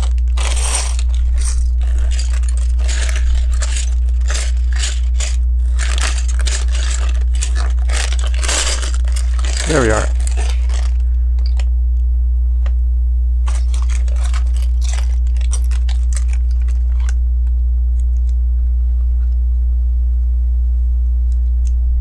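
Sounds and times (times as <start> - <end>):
plastic bricks clicking and rattling: 0.0 - 11.7, 13.5 - 17.2
steady low hum: 0.0 - 22.0.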